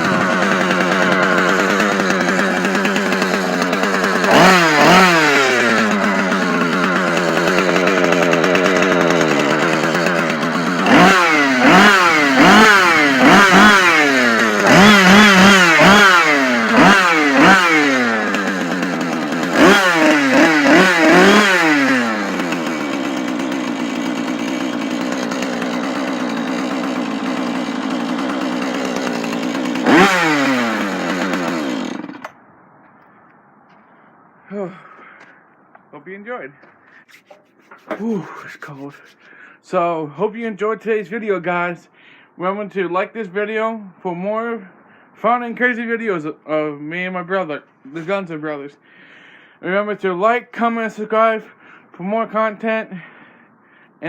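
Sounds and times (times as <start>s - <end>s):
chainsaw idling and revving: 0.0s - 32.4s, 36.6s - 40.2s.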